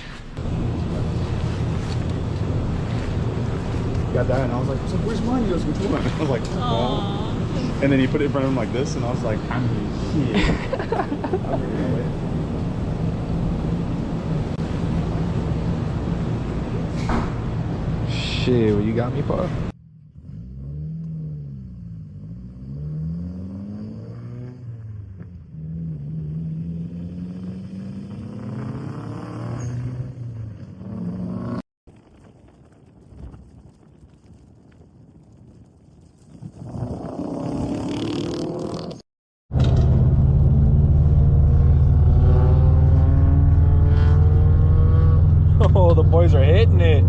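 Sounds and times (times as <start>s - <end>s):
car engine accelerating: 19.1s - 31.6s, 39.5s - 47.0s
car engine pulling through gears: 37.0s - 47.0s.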